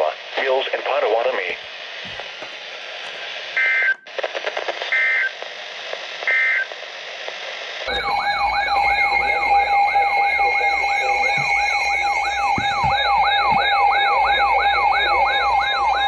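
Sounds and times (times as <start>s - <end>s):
radio static: 0.0s - 16.0s
electronic siren-like tone: 7.9s - 16.0s
two-tone warble data bursts: 7.9s - 16.0s.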